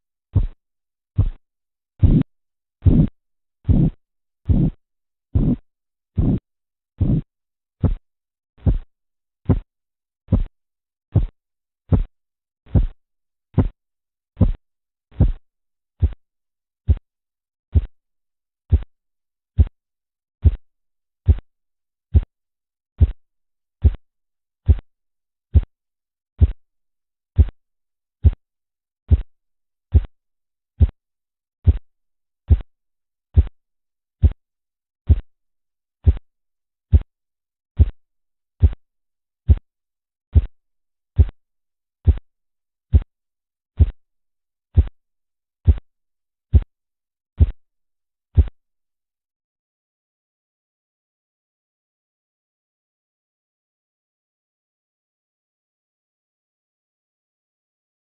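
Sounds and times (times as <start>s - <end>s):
pulse thumps through stethoscope: 0.4s - 0.6s, 1.2s - 1.4s, 2.0s - 3.1s, 3.7s - 4.8s, 5.4s - 5.6s, 6.2s - 6.4s, 7.0s - 8.0s, 8.6s - 9.7s, 10.3s - 10.5s, 11.1s - 12.1s, 12.7s - 13.0s, 13.6s - 13.8s, 14.4s - 15.4s, 16.0s - 16.2s, 17.7s - 17.9s, 18.6s - 18.9s, 22.1s - 22.3s, 25.5s - 25.7s, 26.4s - 26.6s, 27.3s - 27.6s, 29.1s - 29.3s, 29.9s - 30.1s, 31.6s - 31.8s, 32.5s - 32.7s, 34.2s - 34.4s, 35.1s - 35.3s, 36.0s - 36.2s, 37.8s - 38.0s, 38.6s - 38.8s, 41.2s - 41.4s, 42.0s - 42.2s, 43.8s - 44.0s.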